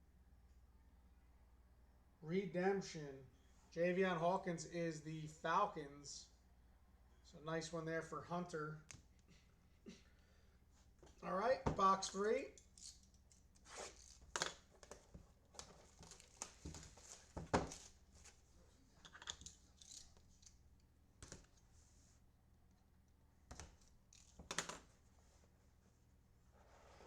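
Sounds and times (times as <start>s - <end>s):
wrapping tearing and crinkling: 13.6s - 18.4s.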